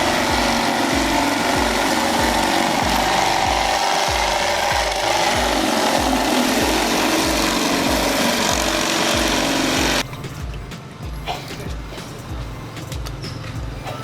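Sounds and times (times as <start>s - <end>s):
motorized ice shaver grinding: 0.0s - 10.0s
background music with steady beat: 0.0s - 14.0s.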